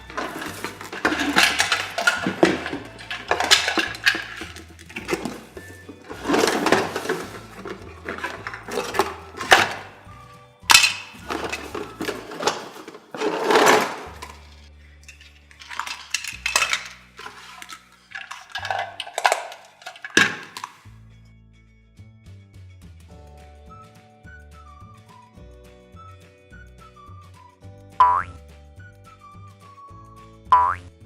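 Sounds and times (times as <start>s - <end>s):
plastic toy pieces clattering: 0.0s - 10.1s, 10.7s - 20.8s
soft background music: 0.0s - 31.0s.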